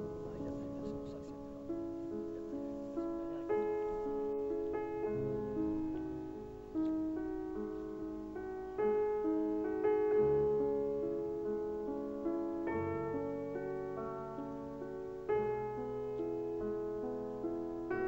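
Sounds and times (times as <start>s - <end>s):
slow gentle piano music: 0.0s - 18.0s.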